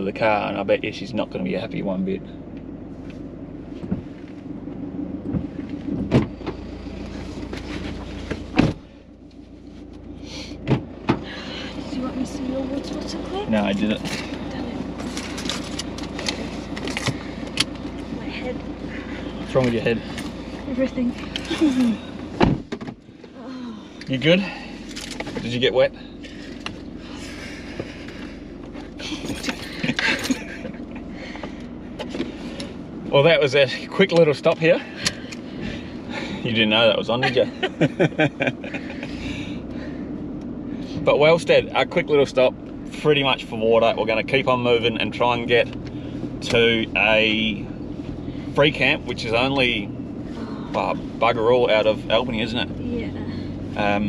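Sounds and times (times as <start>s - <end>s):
car engine idling hum: 0.0s - 54.0s
rustling in car seat: 5.4s - 10.1s.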